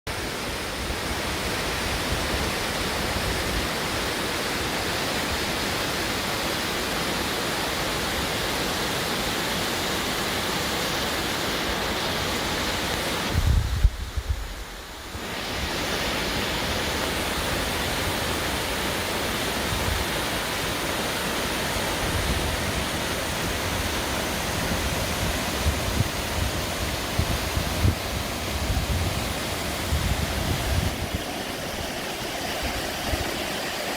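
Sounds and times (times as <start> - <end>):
waterfall rushing: 0.1 - 33.9
wind buffeting microphone: 13.3 - 14.8, 22.0 - 33.9.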